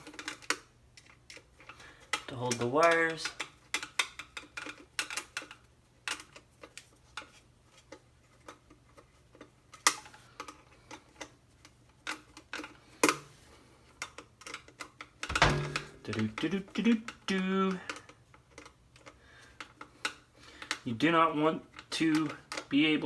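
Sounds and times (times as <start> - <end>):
metal parts clicking: 14.8 - 16.4.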